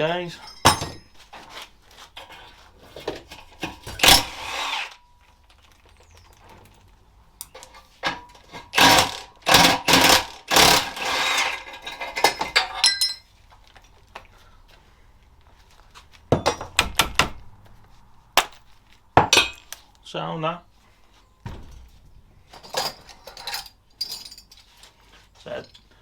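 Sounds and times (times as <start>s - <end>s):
sharp metallic clinks: 0.3s - 1.2s, 12.6s - 13.3s, 22.6s - 24.8s
power tool bursts on nuts: 3.7s - 5.0s, 8.1s - 12.8s.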